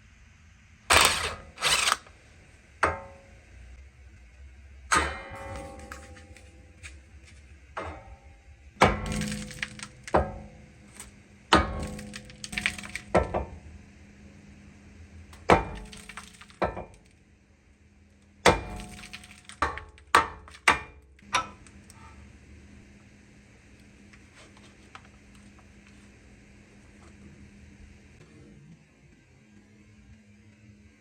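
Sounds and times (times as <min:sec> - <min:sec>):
metallic clanks and knocks: 0:04.9 - 0:06.9, 0:07.8 - 0:10.6.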